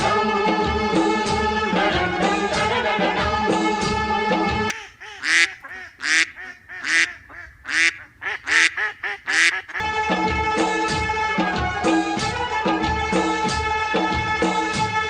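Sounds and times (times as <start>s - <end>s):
background music: 0.0s - 4.7s, 9.4s - 15.0s
ducks quacking: 4.7s - 9.9s.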